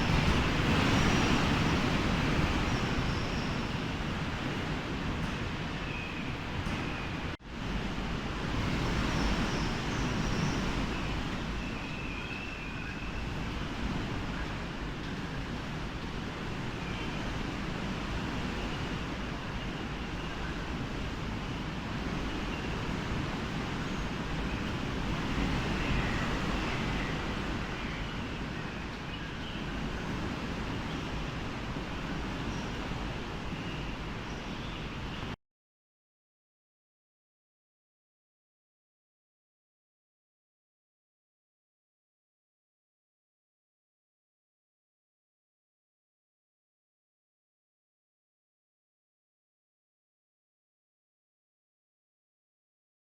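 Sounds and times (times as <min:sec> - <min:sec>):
strong wind on microphone: 0:00.0 - 0:35.4.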